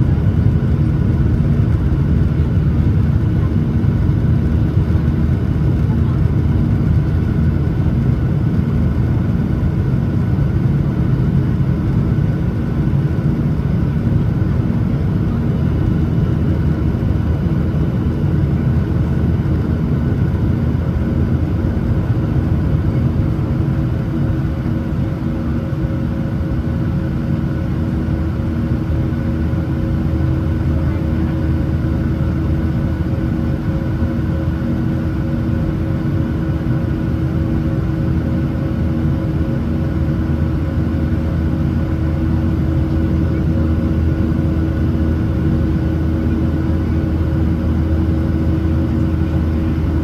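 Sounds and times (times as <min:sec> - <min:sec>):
airplane cabin engine rumble: 0:00.0 - 0:50.0.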